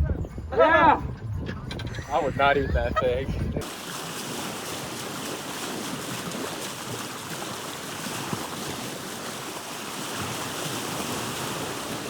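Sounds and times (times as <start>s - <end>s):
wind: 0.0s - 12.0s
rushing water: 3.6s - 12.0s.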